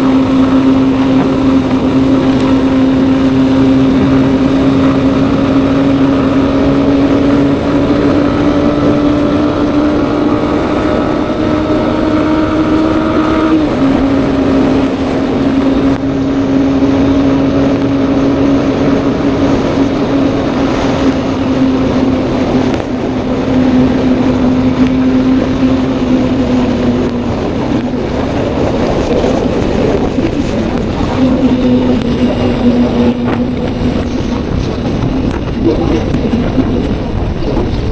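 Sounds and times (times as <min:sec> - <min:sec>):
motorcycle engine cruising: 0:00.0 - 0:37.9
wind rushing over microphone: 0:00.0 - 0:37.9.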